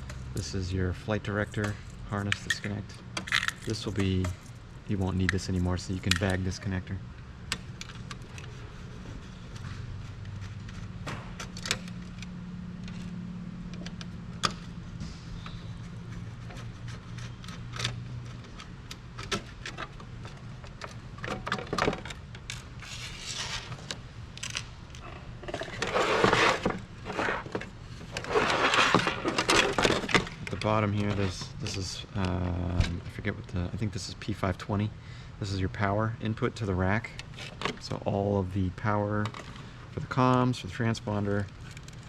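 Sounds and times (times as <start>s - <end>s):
steady low hum: 0.0s - 42.0s
rustling and scraping: 7.8s - 32.0s.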